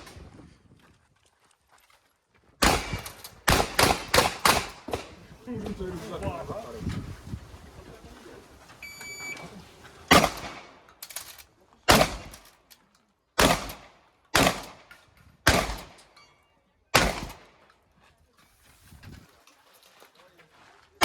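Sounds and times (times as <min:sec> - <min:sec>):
shotgun shots echoing: 0:02.6 - 0:05.2, 0:10.1 - 0:10.8, 0:11.9 - 0:12.4, 0:13.4 - 0:16.0, 0:17.0 - 0:17.6
short electronic beep: 0:08.8 - 0:09.4.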